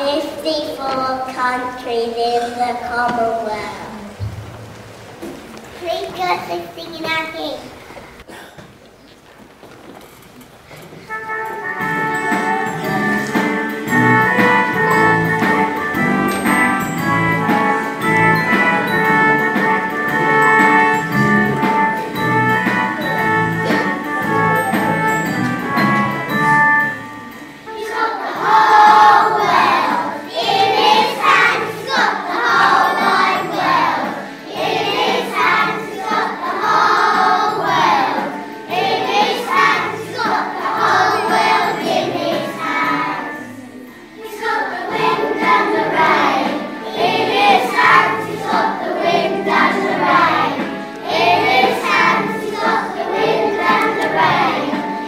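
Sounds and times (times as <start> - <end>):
instrumental accompaniment: 9.8 - 55.0
children singing a hymn: 11.4 - 55.0.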